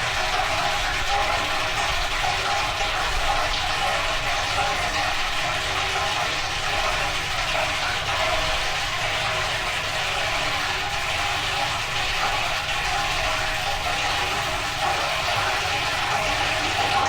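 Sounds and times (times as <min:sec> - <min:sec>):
washing machine running: 0:00.0 - 0:17.0
water rushing inside machine: 0:00.0 - 0:17.0.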